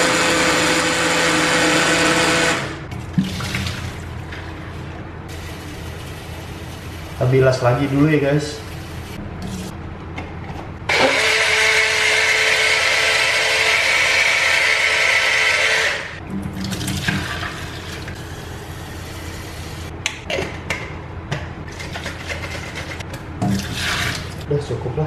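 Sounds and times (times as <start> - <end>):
portable blender whine: 0.0 - 2.9, 10.9 - 16.2.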